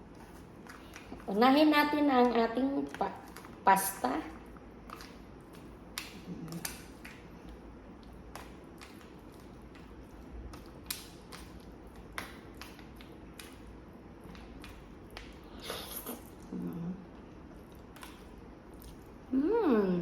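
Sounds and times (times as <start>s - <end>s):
eating clicks and mouth smacks: 4.4s - 16.5s, 17.5s - 19.2s.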